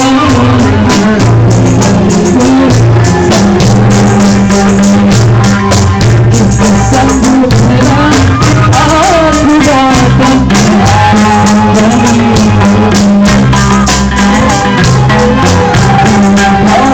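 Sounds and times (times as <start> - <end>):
fast beat of drums and shakers: 0.0 - 16.9
wavering melody line: 8.2 - 16.9.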